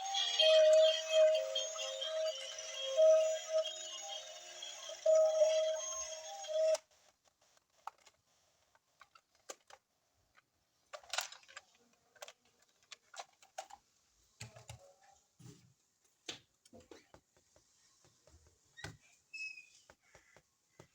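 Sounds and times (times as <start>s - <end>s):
intro music: 0.0s - 6.8s
toys and plastic packaging handled: 6.7s - 20.9s.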